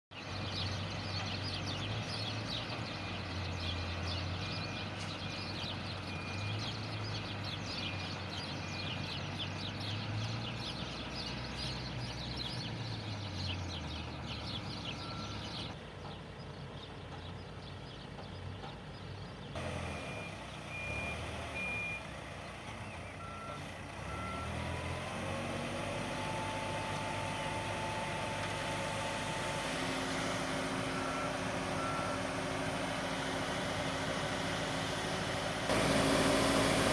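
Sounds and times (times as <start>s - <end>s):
reversing alarm beeps: 5.7s - 6.6s, 14.9s - 15.5s, 19.9s - 22.1s, 23.0s - 25.3s, 30.9s - 32.3s
concrete mixer engine running: 23.2s - 36.9s.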